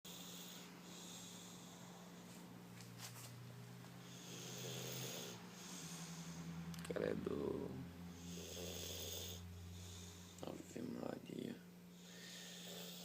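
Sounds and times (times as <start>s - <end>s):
man snoring faintly: 0.1s - 2.3s, 4.0s - 6.6s, 7.4s - 10.6s, 12.0s - 13.0s
steady low hum: 0.1s - 13.0s.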